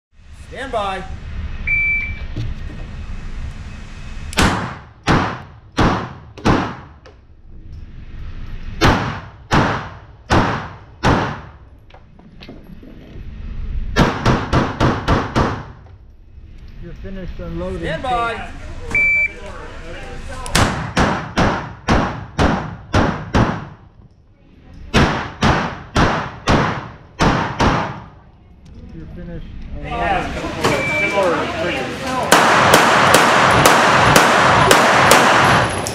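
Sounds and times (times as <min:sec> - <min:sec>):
pistol shots with echo: 0:24.9 - 0:28.1, 0:32.3 - 0:35.8.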